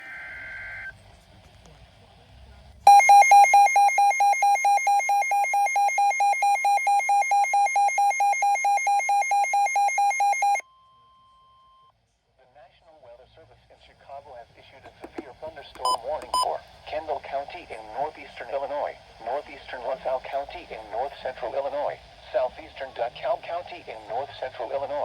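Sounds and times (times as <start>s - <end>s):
electronic alert siren beeping: 2.9s - 10.6s
steady warning alarm tone: 2.9s - 10.6s.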